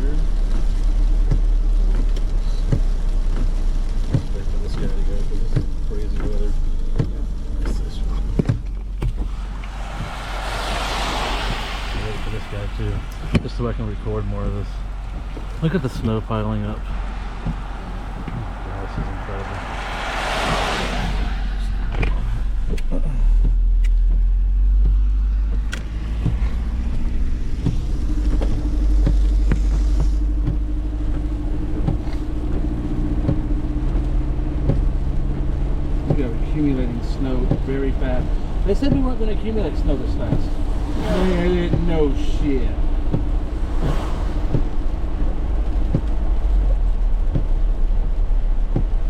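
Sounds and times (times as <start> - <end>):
truck engine rumbling: 0.0 - 49.0
light ticks: 0.2 - 9.7, 21.9 - 39.2
rushing hiss: 9.2 - 13.3.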